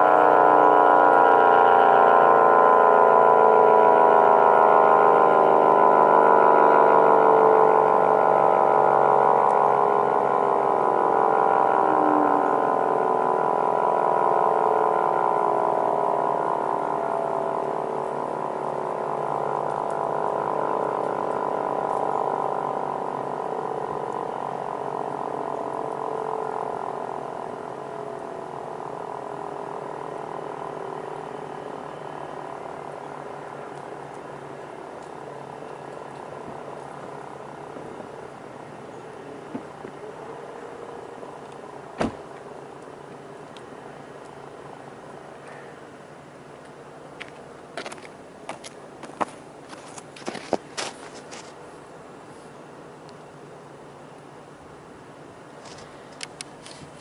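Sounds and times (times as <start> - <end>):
two-tone warning siren winding down: 0.0 - 45.3.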